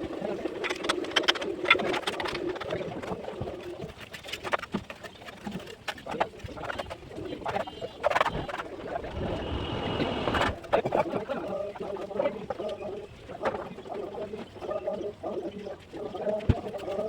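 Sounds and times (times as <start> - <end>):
bird cooing: 6.4 - 17.0.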